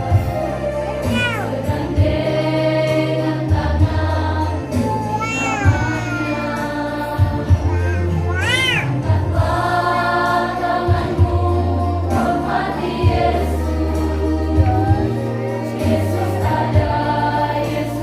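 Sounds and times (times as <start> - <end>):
mixed choir singing a hymn: 0.0 - 18.0.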